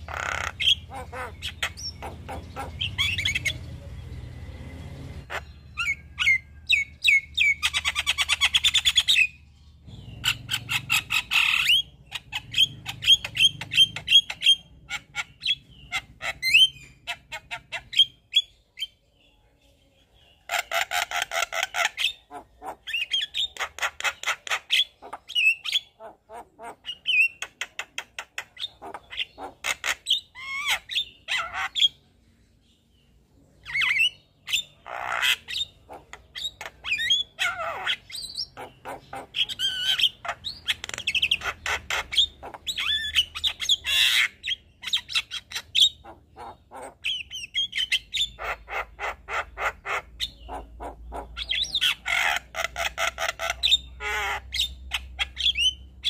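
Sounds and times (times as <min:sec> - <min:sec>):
myna bird singing: 0:00.0 - 0:56.0.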